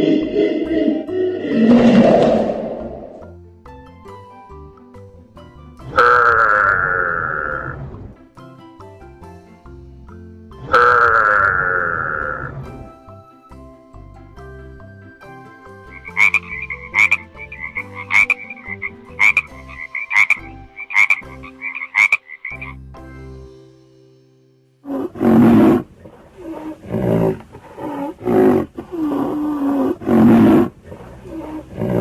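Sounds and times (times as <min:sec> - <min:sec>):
big cat roaring and growling: 0:00.0 - 0:03.3, 0:24.8 - 0:32.0
faint melody: 0:00.0 - 0:32.0
frogs croaking: 0:05.9 - 0:07.8, 0:10.6 - 0:12.6, 0:15.8 - 0:22.8.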